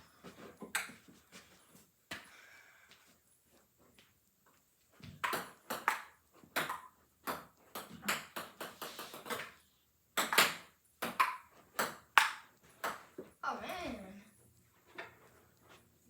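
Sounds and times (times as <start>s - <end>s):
paddles hitting ball: 5.0s - 9.6s.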